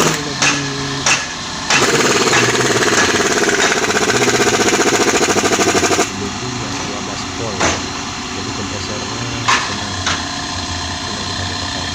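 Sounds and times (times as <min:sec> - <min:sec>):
compressor running with rapid pulsing: 0:00.0 - 0:11.9.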